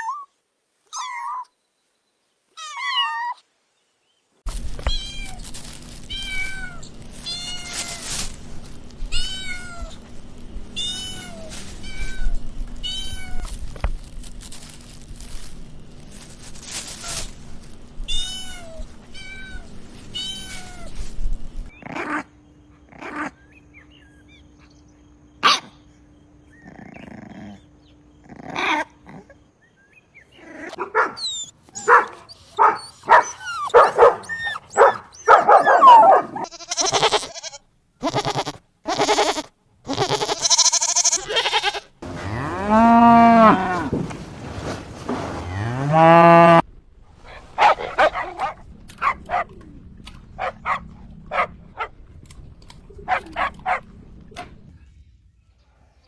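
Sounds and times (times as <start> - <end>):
cow mooing: 42.0 - 44.0, 45.4 - 46.6.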